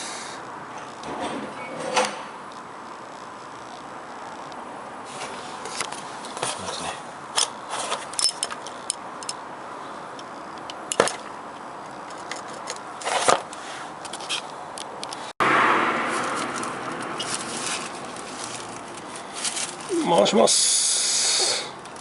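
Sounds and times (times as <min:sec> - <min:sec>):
steady hiss: 0:00.0 - 0:00.6, 0:17.6 - 0:21.8
metal wrench clinks and scrapes: 0:07.4 - 0:09.4.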